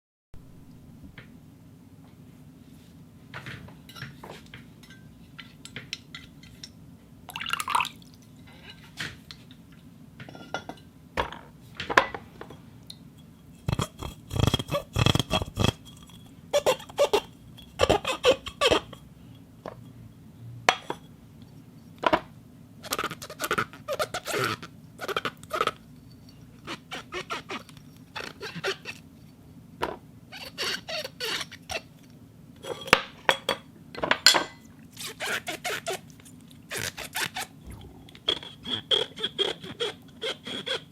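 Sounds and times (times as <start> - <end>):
steady low hum: 0.4 - 22.9, 37.4 - 39.0
glass clinking and squeaking: 13.2 - 19.0.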